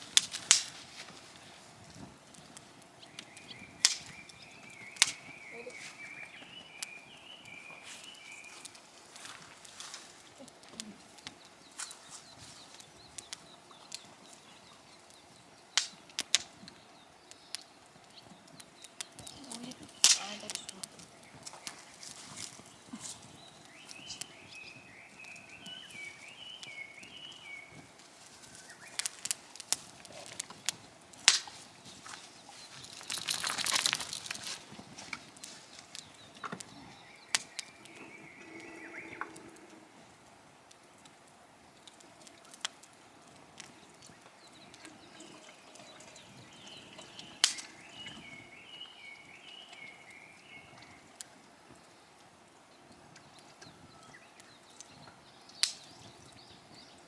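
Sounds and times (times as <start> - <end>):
bird singing warbling phrase: 5.4 - 6.3
sharp clicks and crackles: 29.0 - 31.6, 32.7 - 34.7
rustling noise: 31.4 - 35.9.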